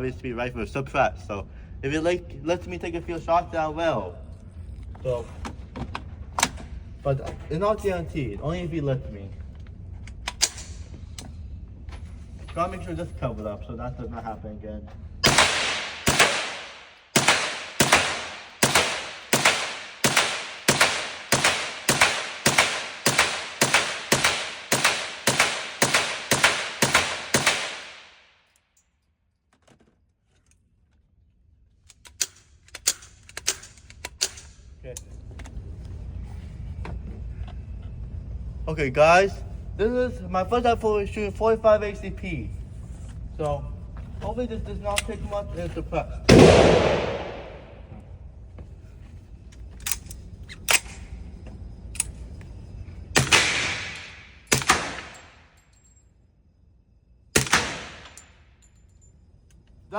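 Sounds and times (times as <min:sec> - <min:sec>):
gunshot echo indoors: 0:15.2 - 0:28.2, 0:46.3 - 0:48.0
firearm metallic clicks and knocks: 0:31.8 - 0:34.6.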